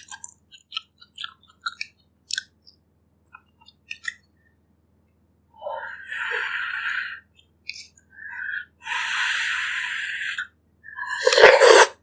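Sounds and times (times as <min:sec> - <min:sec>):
slurping hot broth: 0:11.0 - 0:12.0.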